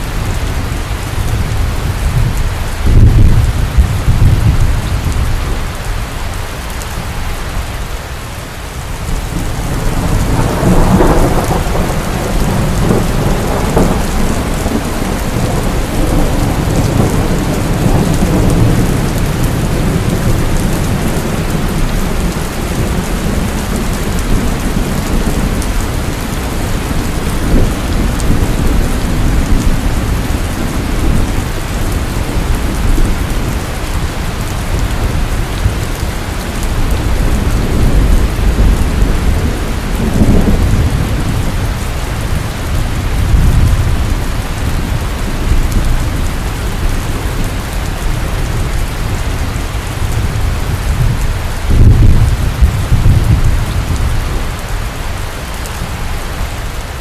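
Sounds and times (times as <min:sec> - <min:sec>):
thunder rumbling: 0:00.0 - 0:06.0, 0:08.8 - 0:57.0
heavy rain falling: 0:00.0 - 0:57.0.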